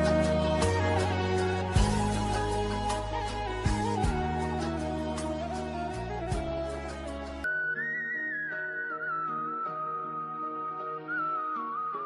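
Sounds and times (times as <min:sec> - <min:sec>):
instrumental chords over deep bass: 0:00.0 - 0:07.4.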